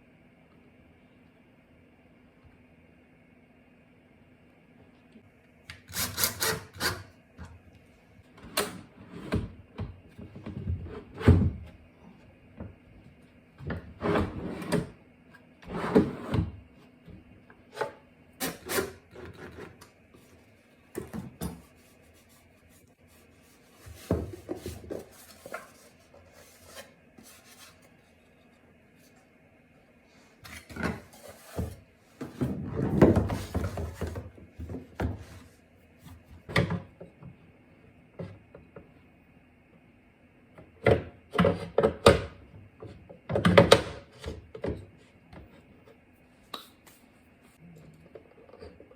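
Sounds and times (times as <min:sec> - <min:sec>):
rubbing and scraping on wood: 0:21.5 - 0:29.2.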